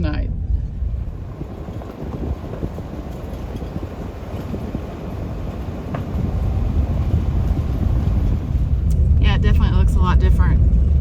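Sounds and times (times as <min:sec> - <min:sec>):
truck engine and tyres rumbling: 0:00.0 - 0:11.0
small knocks and rattles: 0:00.9 - 0:08.7.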